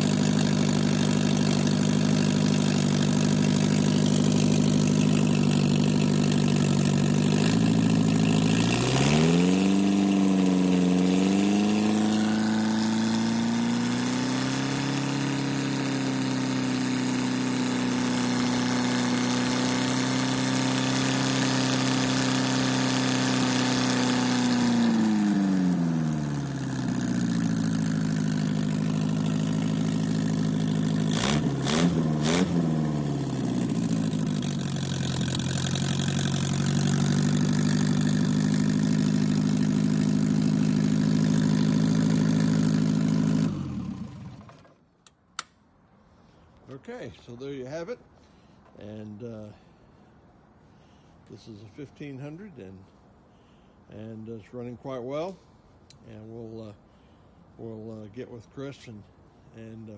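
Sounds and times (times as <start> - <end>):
engine idling and revving: 0.0 - 45.5.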